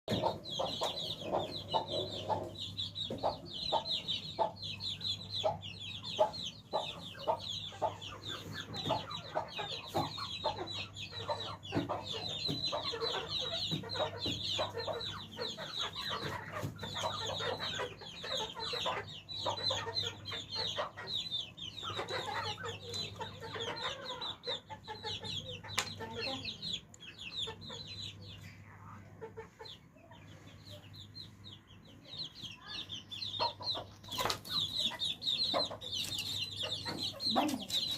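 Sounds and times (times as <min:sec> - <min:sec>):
chickens clucking: 0:00.1 - 0:37.9
chorus of high peeps: 0:00.1 - 0:37.9.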